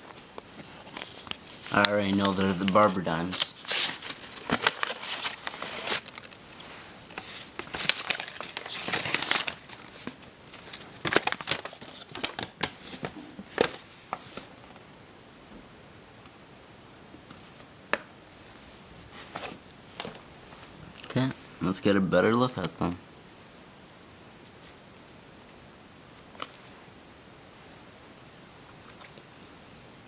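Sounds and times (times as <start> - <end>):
packaging crinkling and tearing: 0.1 - 13.8.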